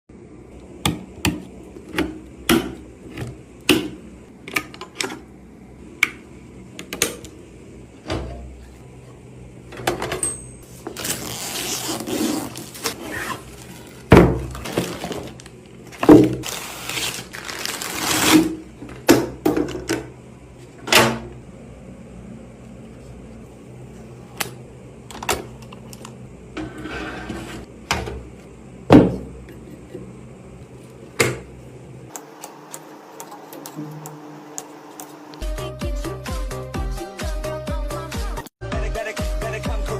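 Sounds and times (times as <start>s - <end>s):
rustling and scraping: 10.7s - 18.5s.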